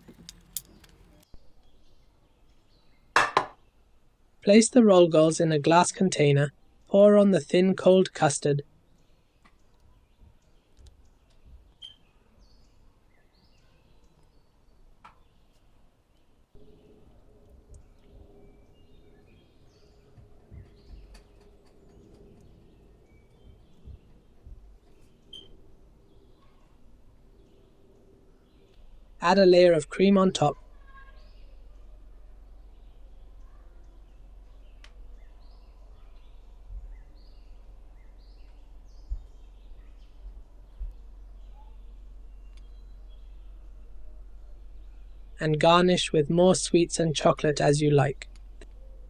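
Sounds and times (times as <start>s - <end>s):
faint bird chirps: 8.7s - 49.0s
low hum: 16.6s - 49.0s.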